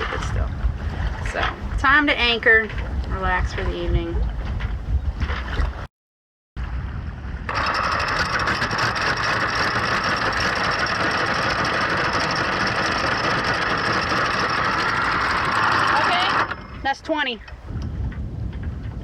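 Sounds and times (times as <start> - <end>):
anchor chain rattling: 7.5 - 18.2.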